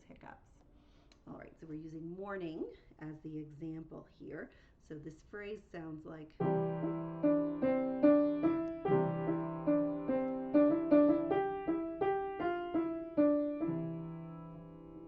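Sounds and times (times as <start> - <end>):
slow piano melody with chords: 6.4 - 15.0.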